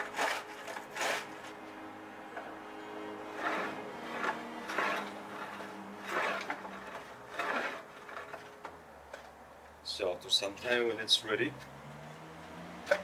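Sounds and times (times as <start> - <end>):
sanding wood by hand: 3.4 - 8.5.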